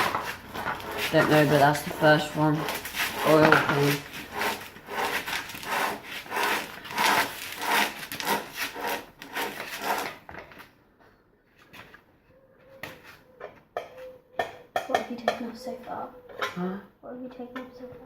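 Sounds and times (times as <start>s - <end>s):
rhythmic scraping strokes by hand: 0.0s - 10.2s.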